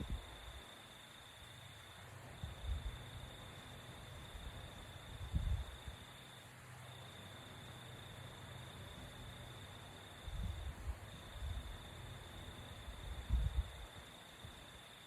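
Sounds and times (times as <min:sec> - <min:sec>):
high insect trill: 0:00.0 - 0:15.0.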